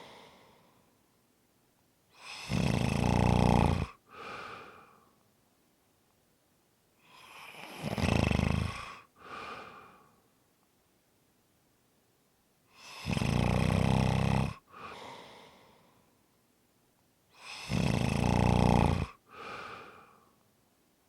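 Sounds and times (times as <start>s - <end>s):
person snoring: 2.2s - 4.9s, 7.0s - 9.9s, 12.8s - 15.2s, 17.4s - 20.2s.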